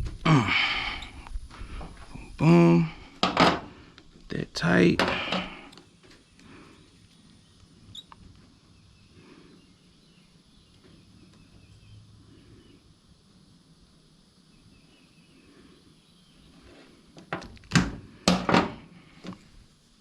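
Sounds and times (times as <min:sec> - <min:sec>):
loud knocks and clatters: 0:03.2 - 0:03.7.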